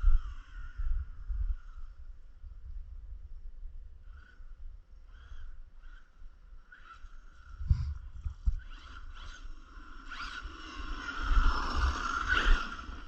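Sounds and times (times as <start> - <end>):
electric motor whine and rumble: 0.0 - 13.0.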